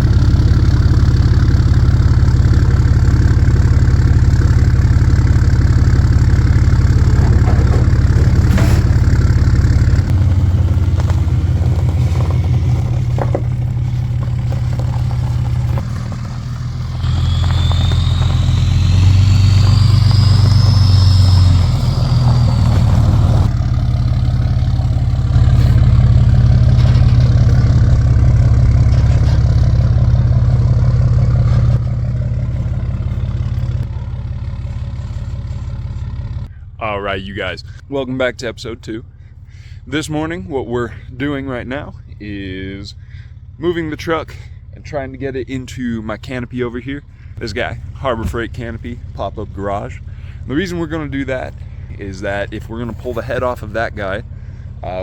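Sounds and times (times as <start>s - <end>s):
high whine: 0.0s - 37.8s
vehicle engine droning: 0.0s - 55.0s.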